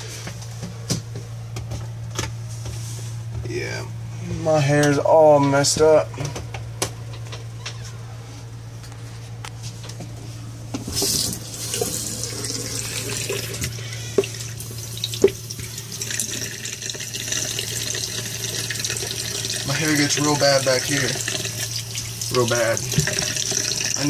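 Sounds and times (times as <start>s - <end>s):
tap water running into basin: 10.9s - 24.0s.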